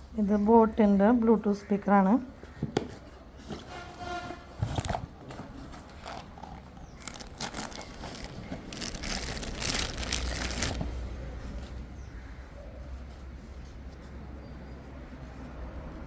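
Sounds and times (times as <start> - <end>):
packaging rustling: 4.6 - 11.6.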